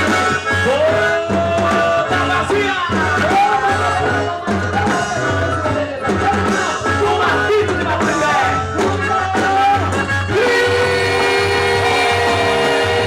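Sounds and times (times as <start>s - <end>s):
loud folk dance music: 0.0s - 13.0s.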